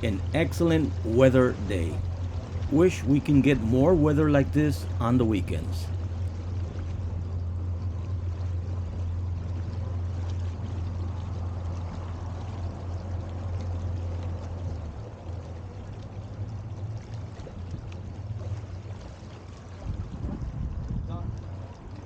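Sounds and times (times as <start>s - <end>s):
water rushing past hull: 0.0s - 14.6s
motorboat engine running: 0.0s - 22.0s.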